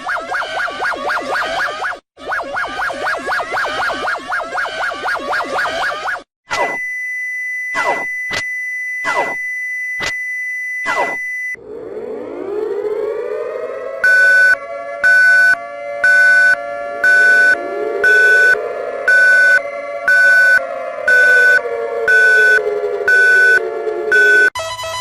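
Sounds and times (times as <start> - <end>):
siren wailing: 0.0 - 6.8, 10.8 - 24.6
loud repeating beep: 6.5 - 11.6, 14.1 - 20.6, 21.2 - 24.5
alert tone with falling sweeps: 10.8 - 24.5.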